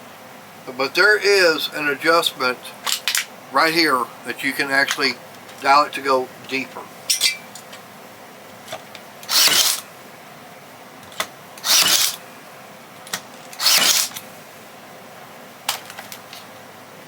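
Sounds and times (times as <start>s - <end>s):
stapler firing staples: 9.3s - 9.8s, 11.2s - 12.2s, 13.6s - 14.2s.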